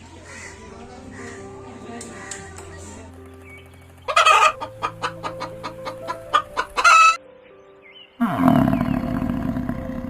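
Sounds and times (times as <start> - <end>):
background music: 0.0 - 10.0
chicken clucking: 4.1 - 7.2.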